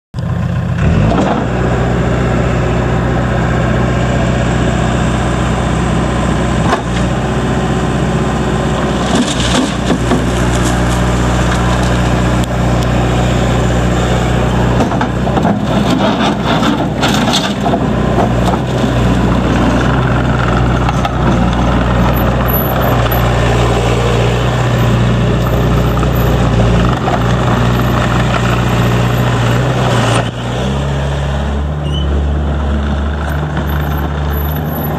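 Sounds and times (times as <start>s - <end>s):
diesel engine running: 0.2s - 34.9s
engine clattering: 8.8s - 30.4s, 31.9s - 34.9s.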